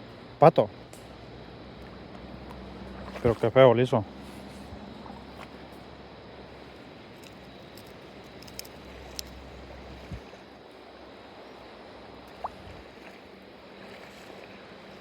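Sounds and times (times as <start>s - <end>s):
flowing water: 8.7s - 15.0s.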